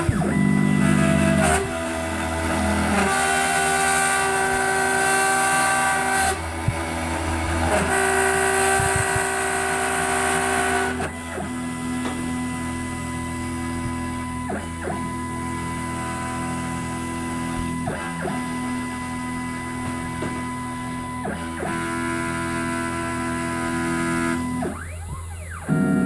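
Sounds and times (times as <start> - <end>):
sustained music chords: 0.0 - 9.9
guitar: 0.0 - 26.0.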